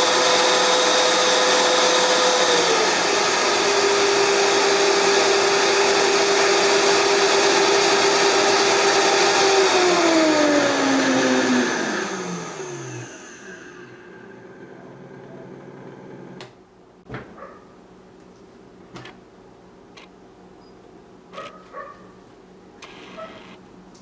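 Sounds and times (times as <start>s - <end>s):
blender motor whining: 0.0s - 16.4s, 22.8s - 23.6s.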